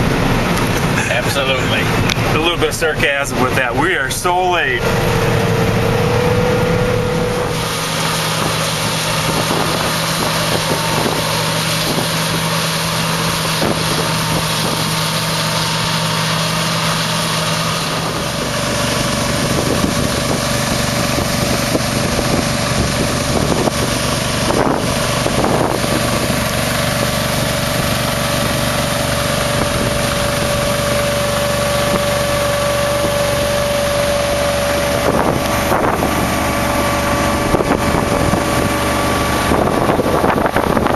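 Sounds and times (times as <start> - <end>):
combine engine and machinery drone: 0.0 - 40.9
higher steady whine: 0.0 - 40.9.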